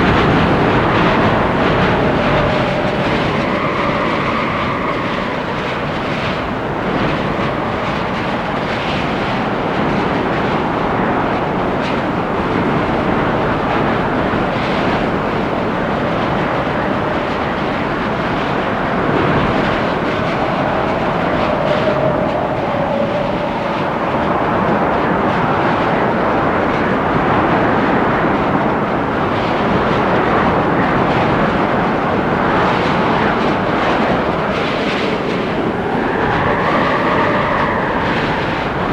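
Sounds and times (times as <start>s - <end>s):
storm wind gusting through trees: 0.0s - 38.9s
faint whistling tone: 34.0s - 38.9s.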